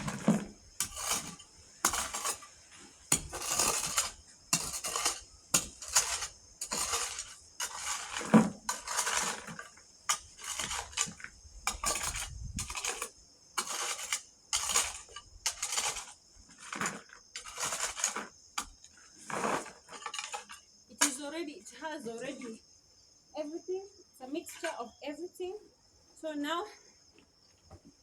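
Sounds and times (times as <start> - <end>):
gritty crunching of ballast: 0.0 - 20.7.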